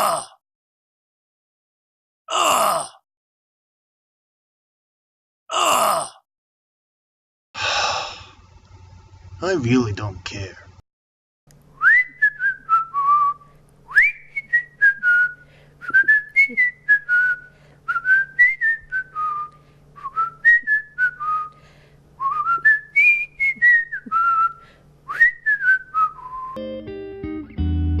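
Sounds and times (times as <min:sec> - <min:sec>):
faint steady hum: 0:07.6 - 0:10.8, 0:11.5 - 0:26.6
person whistling: 0:11.8 - 0:21.6, 0:22.2 - 0:26.6.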